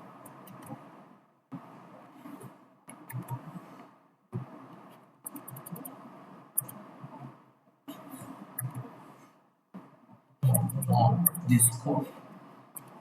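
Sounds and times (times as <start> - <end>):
low background noise: 0.0 - 13.0
faint clicks: 4.7 - 6.0, 6.6 - 6.8, 8.6 - 8.9.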